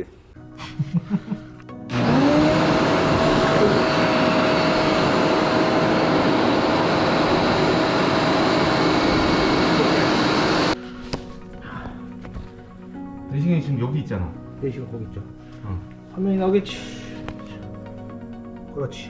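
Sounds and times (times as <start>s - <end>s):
vacuum motor whine and air rushing: 1.9s - 10.8s.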